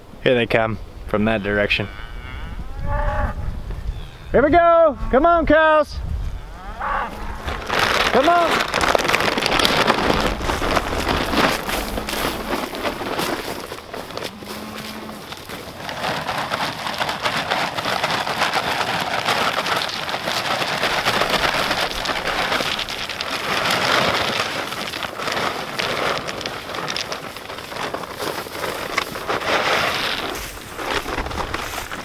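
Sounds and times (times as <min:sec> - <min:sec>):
freezing rain pattering: 0:06.6 - 0:32.0.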